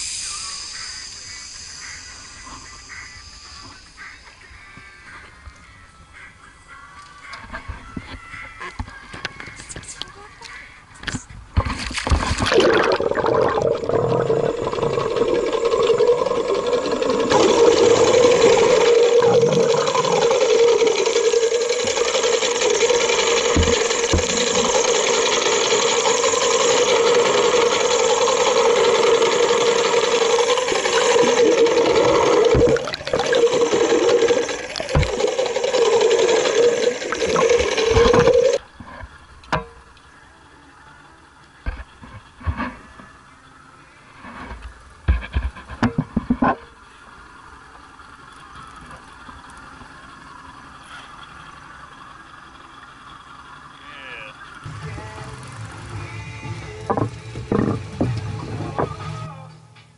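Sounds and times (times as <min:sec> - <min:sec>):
rushing water: 0:12.1 - 0:22.0
loud motor drone: 0:13.1 - 0:38.6, 0:50.2 - 0:59.2.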